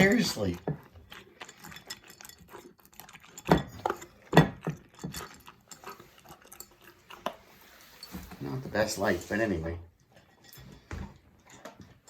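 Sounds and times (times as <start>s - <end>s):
dog crunching kibble: 0.0s - 7.6s.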